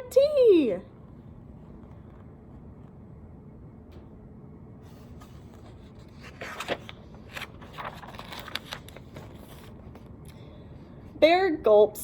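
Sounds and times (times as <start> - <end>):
low room noise: 0.0 - 12.0
paper page rustling: 4.9 - 10.2.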